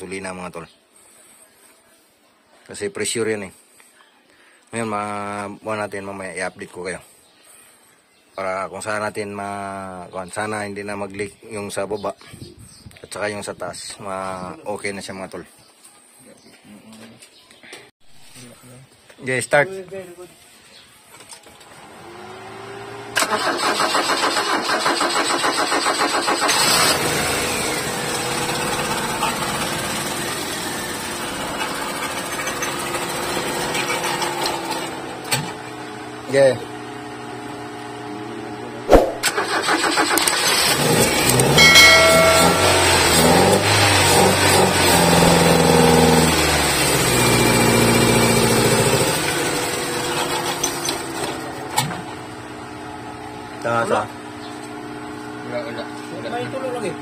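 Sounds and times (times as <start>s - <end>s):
starter motor cranking engine: 21.7s - 35.7s, 39.2s - 52.2s
car engine revving and idling: 21.8s - 23.2s, 26.5s - 37.3s, 40.6s - 53.6s.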